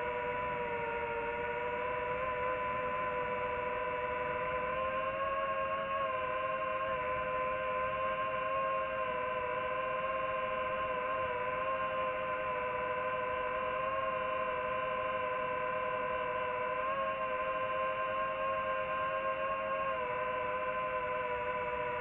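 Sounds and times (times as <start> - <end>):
drone propellers whining: 0.0 - 22.0.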